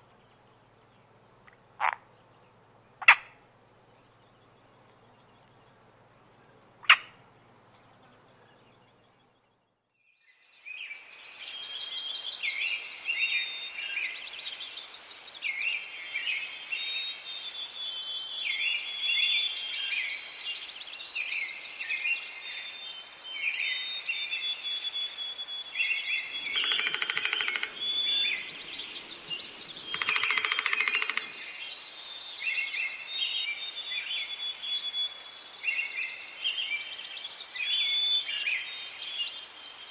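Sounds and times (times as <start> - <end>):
songbird chorus: 0.0 - 39.9
rapid rattling bird calls: 26.0 - 31.7.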